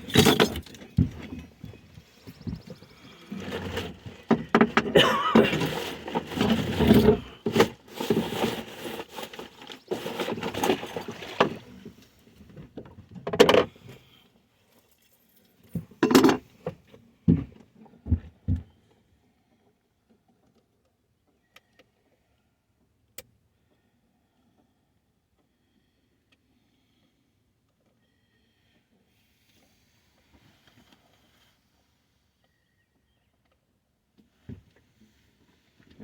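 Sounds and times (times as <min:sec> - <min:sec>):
hands scraping and rustling tackle: 0:00.0 - 0:12.2.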